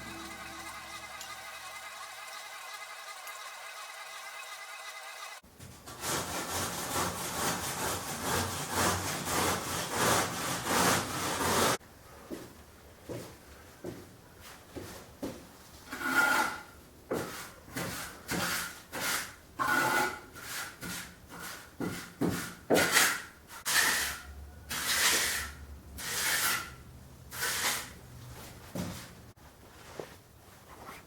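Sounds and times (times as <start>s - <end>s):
wood being scraped by hand: 0.0s - 11.8s.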